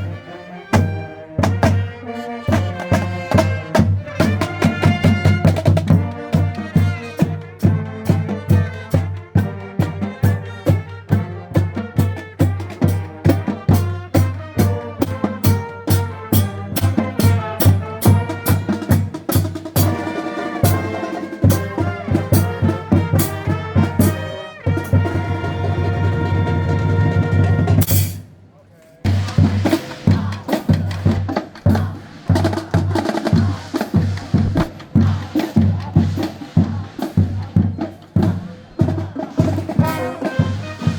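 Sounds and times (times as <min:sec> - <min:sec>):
drums keeping steady beat: 0:00.0 - 0:40.9
marching band wind and brass: 0:00.0 - 0:40.9
bass drum steady beat: 0:29.1 - 0:40.9.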